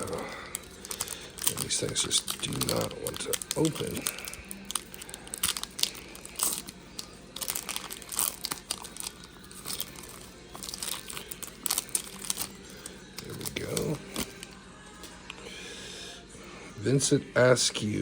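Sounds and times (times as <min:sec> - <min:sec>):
foil wrapper crinkling: 0:00.0 - 0:15.3.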